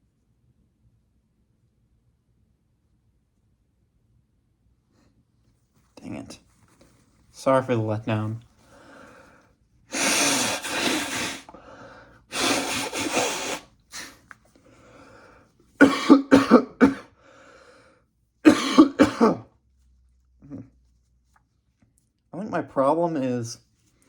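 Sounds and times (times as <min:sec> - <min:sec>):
person blowing breath: 0:08.7 - 0:15.5, 0:17.2 - 0:18.0
person coughing: 0:15.8 - 0:17.2, 0:18.4 - 0:19.5.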